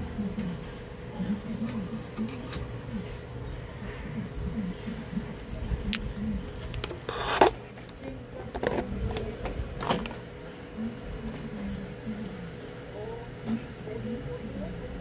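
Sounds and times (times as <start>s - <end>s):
rasping scrape: 6.8s - 7.6s.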